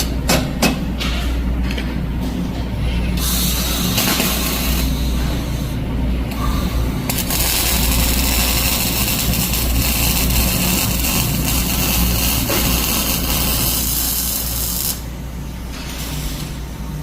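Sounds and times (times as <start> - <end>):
low machine hum: 0.0 - 17.0
welding arc crackling: 3.2 - 5.0, 7.0 - 15.2.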